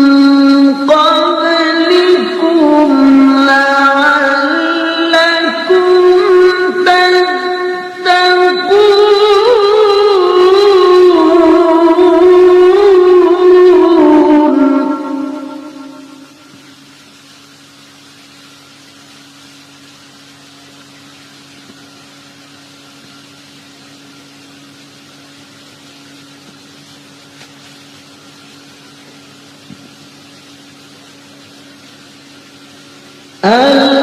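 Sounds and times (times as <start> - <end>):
low hum with hiss: 0.0 - 34.0
small click: 27.4 - 27.6.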